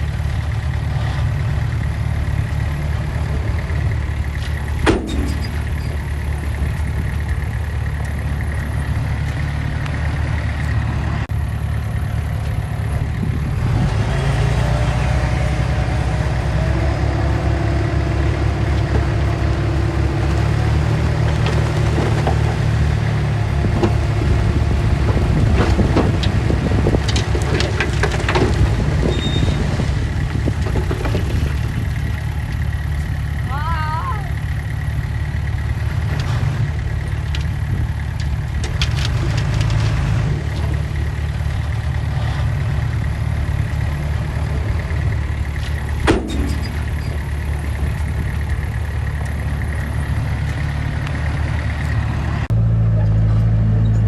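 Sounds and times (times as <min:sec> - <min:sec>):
heavy machinery diesel engine: 0:00.0 - 0:54.0
sharp metal clanks: 0:04.8 - 0:06.1, 0:46.0 - 0:47.4.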